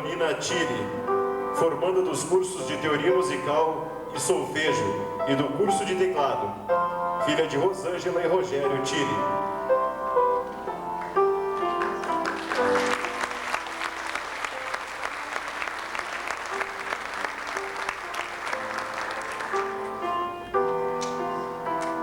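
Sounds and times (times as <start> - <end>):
soft piano music: 0.0 - 22.0
audience applauding: 10.9 - 20.0.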